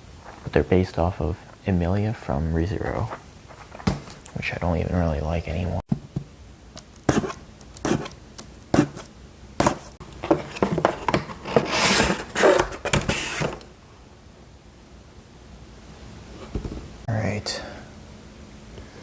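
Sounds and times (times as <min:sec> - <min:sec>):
cardboard scraping and rustling: 0:09.6 - 0:13.7.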